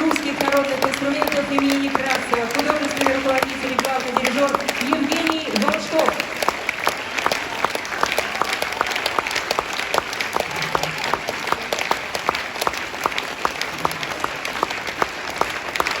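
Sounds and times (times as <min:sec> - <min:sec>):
audience applauding: 0:00.0 - 0:16.0.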